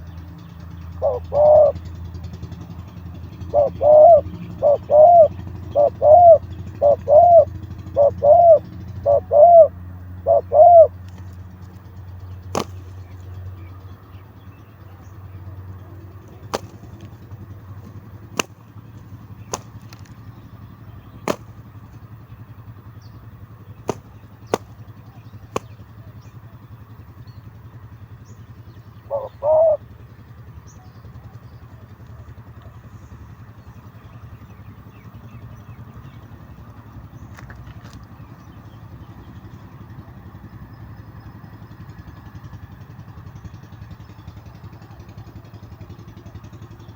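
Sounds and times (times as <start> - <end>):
dove cooing: 0.9 - 2.1, 3.3 - 11.4, 12.5 - 13.1, 15.8 - 20.3, 21.1 - 21.6, 29.0 - 29.9
sharp clicks: 12.6 - 12.9, 18.4 - 20.2, 21.3 - 21.6.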